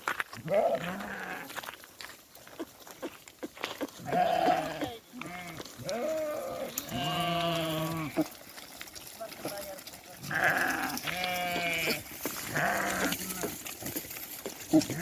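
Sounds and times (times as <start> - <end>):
sheep bleating: 0.4 - 1.6, 4.0 - 8.4, 10.2 - 13.8, 14.6 - 15.0.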